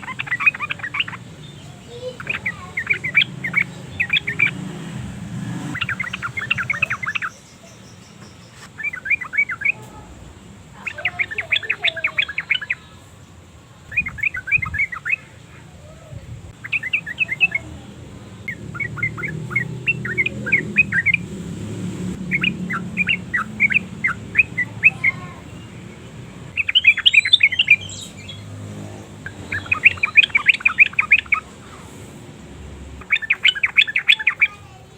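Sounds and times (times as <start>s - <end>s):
bird singing rapid chattering notes: 0.0s - 13.0s, 13.9s - 34.9s.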